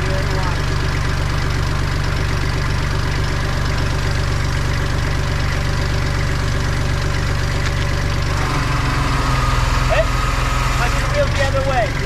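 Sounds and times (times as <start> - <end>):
diesel tractor engine idling: 0.0 - 12.0.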